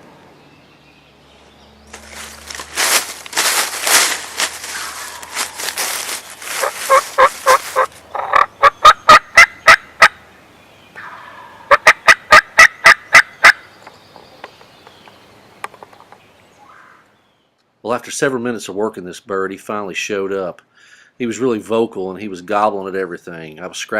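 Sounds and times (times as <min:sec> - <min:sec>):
dry leaves being scratched: 0:01.9 - 0:08.0
turkey yelps: 0:04.7 - 0:05.9, 0:06.5 - 0:10.1, 0:11.0 - 0:13.6.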